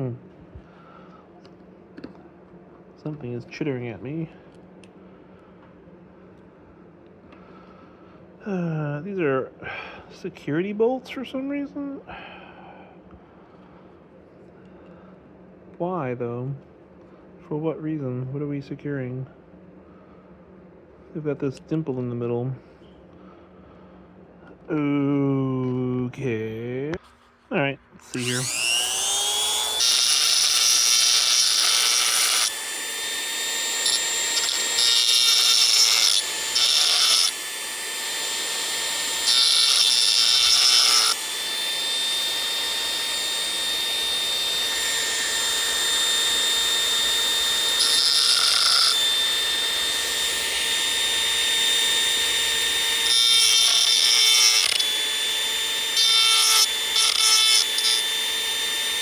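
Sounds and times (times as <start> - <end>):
high-speed power tool motor: 28.1 - 59.0.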